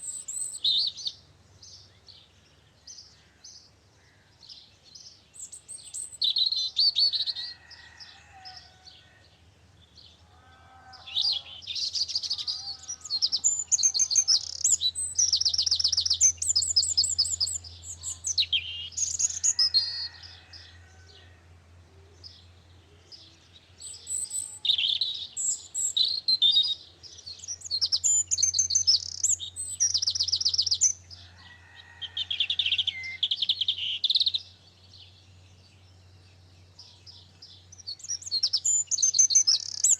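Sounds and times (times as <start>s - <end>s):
songbird trilling and chattering: 0.0s - 1.2s, 11.2s - 19.8s, 23.8s - 31.1s, 32.8s - 34.5s, 37.3s - 39.9s.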